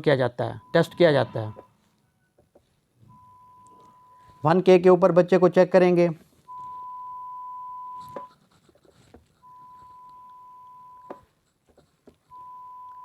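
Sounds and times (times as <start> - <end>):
pure tone beep: 0.5 - 1.8, 3.0 - 4.6, 6.5 - 8.3, 9.4 - 11.2, 12.3 - 13.0.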